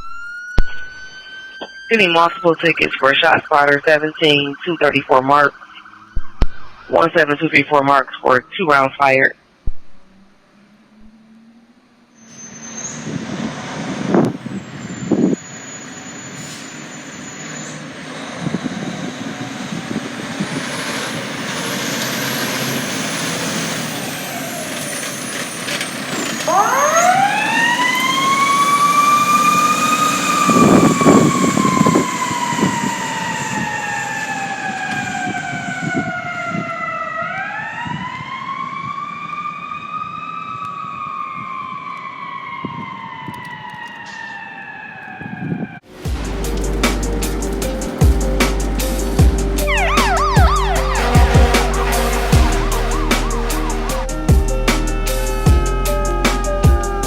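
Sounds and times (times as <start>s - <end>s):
truck engine rumble: 9.4s - 39.5s, 45.8s - 57.0s.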